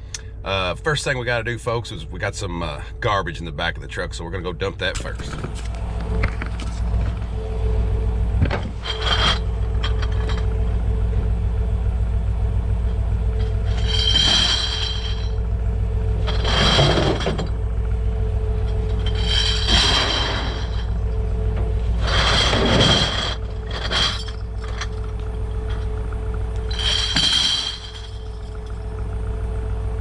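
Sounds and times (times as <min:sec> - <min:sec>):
truck engine rumbling: 0:00.0 - 0:30.0
scraping clinking noises: 0:08.4 - 0:10.8, 0:13.2 - 0:29.2.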